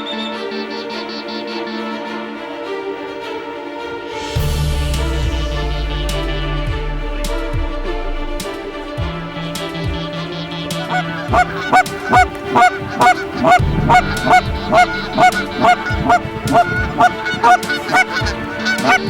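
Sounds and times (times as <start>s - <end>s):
goose call honks and clucks: 10.7s - 19.0s.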